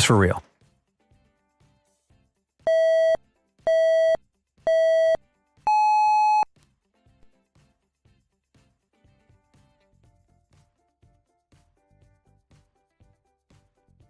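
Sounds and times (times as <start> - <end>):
electronic countdown beeps: 2.7 - 6.5.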